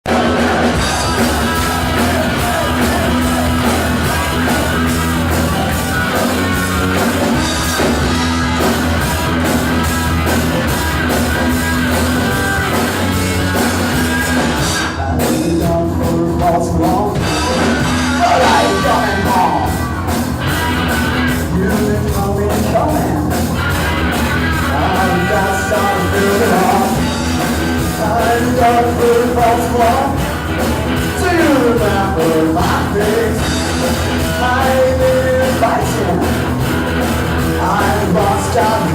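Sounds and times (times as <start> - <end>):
bass guitar: 0.0 - 38.9
drum kit: 0.0 - 38.9
electric guitars: 0.1 - 38.9
person singing: 14.9 - 20.1, 21.3 - 23.5, 24.6 - 36.6, 37.4 - 38.9.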